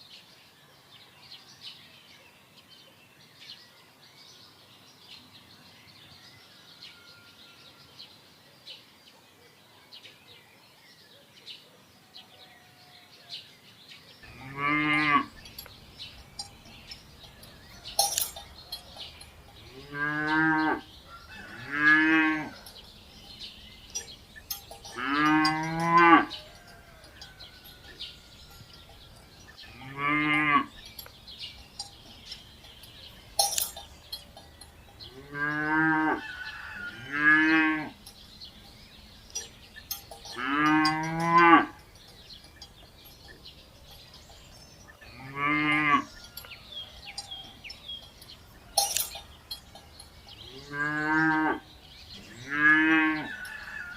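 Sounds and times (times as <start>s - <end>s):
cattle mooing: 14.3s - 15.5s, 19.7s - 22.7s, 24.9s - 26.6s, 29.7s - 30.7s, 35.1s - 38.0s, 50.5s - 51.7s, 52.3s - 53.9s.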